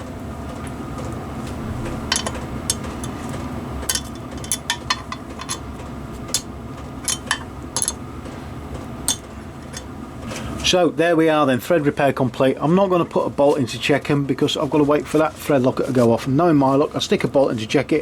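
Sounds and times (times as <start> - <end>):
steady low hum: 0.0 - 18.0
hand tools clinking on metal: 2.1 - 3.2, 3.9 - 5.6, 6.3 - 8.0.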